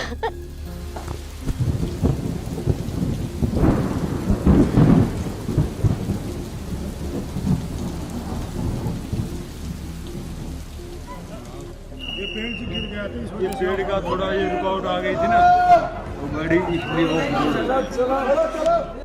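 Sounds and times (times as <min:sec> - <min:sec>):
heavy rain: 0:00.0 - 0:19.0
thunder rumbling: 0:00.8 - 0:14.3.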